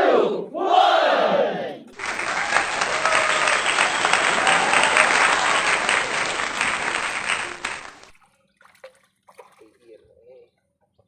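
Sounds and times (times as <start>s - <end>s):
crowd applause: 2.0s - 8.2s
faint voices: 2.0s - 8.2s.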